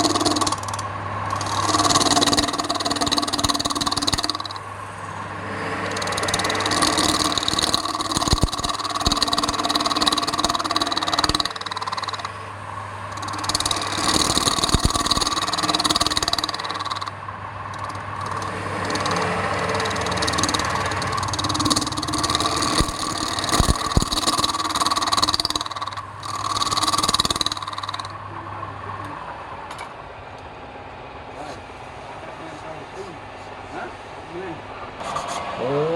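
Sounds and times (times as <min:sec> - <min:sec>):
sharp clicks: 0:00.0 - 0:04.7, 0:05.8 - 0:12.4, 0:13.1 - 0:28.2
tool scraping spinning wood: 0:00.0 - 0:28.2
wood lathe humming: 0:00.0 - 0:29.0.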